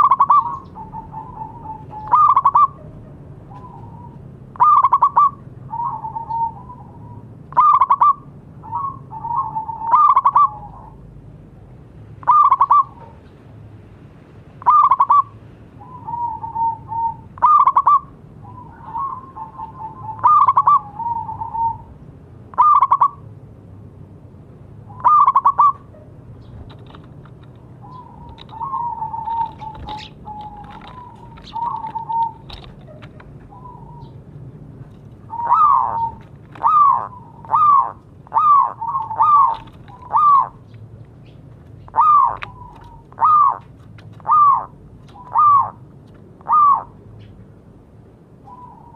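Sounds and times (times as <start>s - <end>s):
dove cooing loudly: 0.0s - 11.0s, 12.2s - 13.2s, 14.6s - 23.2s, 24.9s - 26.1s, 27.8s - 34.2s, 35.2s - 40.7s, 41.8s - 45.8s, 46.4s - 47.0s, 48.4s - 48.9s
soft trilling coos: 35.3s - 40.6s, 41.9s - 45.8s, 46.4s - 47.0s.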